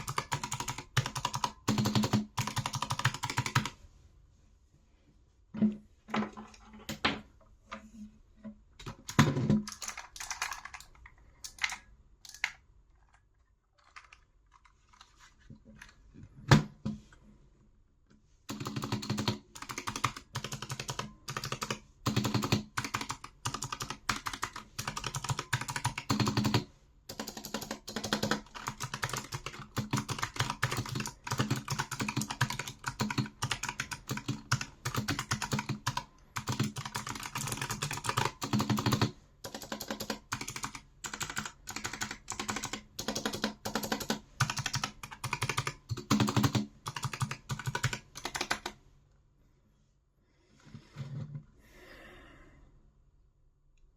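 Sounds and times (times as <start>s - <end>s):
keyboard typing clicks: 0.0s - 3.7s, 8.8s - 12.6s, 18.5s - 48.8s.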